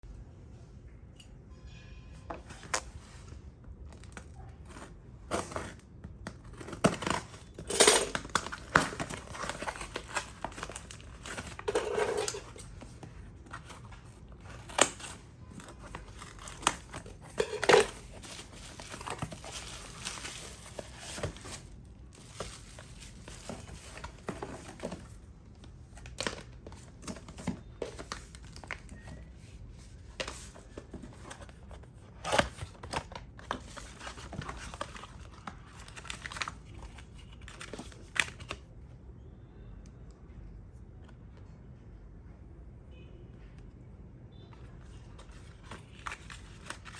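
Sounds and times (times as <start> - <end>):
wrapping crinkling and tearing: 3.9 - 25.2.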